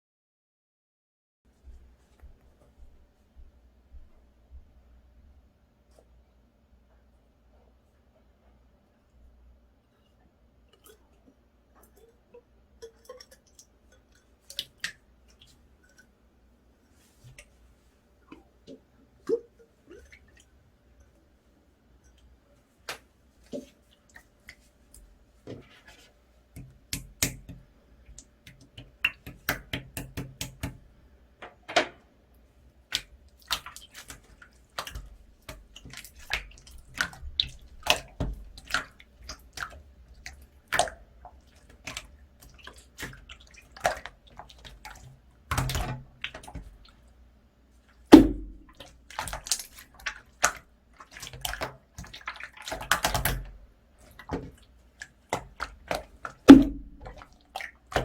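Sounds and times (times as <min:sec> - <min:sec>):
slime squelching: 0:32.8 - 0:47.0, 0:47.8 - 0:58.0.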